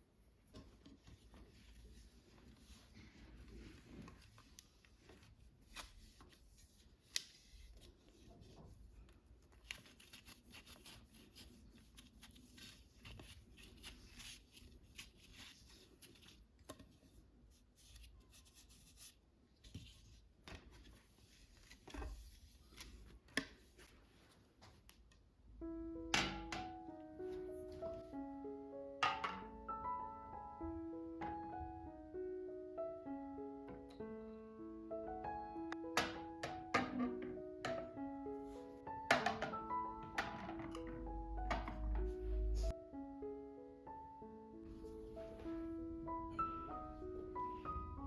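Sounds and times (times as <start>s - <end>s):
objects handled by hand: 0.4s - 25.3s, 38.5s - 42.7s.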